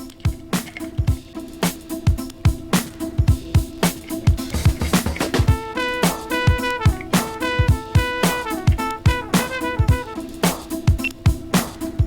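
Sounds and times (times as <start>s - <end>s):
snare and hi-hat hits: 0.0s - 12.0s
held bass line: 5.5s - 10.2s
kick drum thumps: 6.5s - 10.2s.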